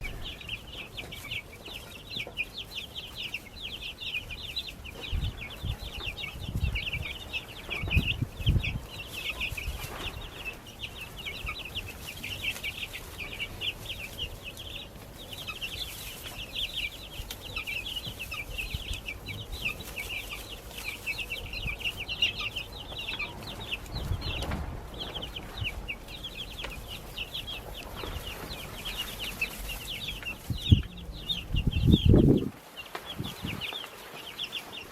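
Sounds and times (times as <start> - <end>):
baby chicks peeping: 0.0 - 34.9.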